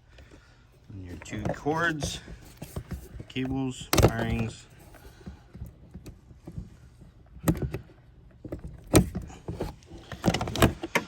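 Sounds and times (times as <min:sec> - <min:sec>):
plastic door panel clicks and knocks: 0:03.9 - 0:04.5.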